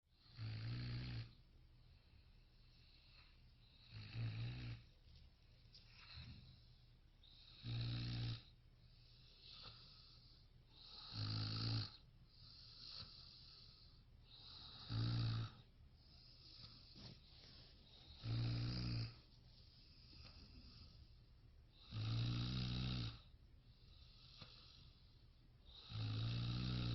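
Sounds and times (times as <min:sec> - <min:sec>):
person snoring: 0:00.2 - 0:01.4, 0:02.8 - 0:04.8, 0:07.3 - 0:08.5, 0:09.4 - 0:16.9, 0:18.0 - 0:19.2, 0:21.7 - 0:23.3, 0:25.7 - 0:26.9
faint breaths: 0:01.2 - 0:26.9.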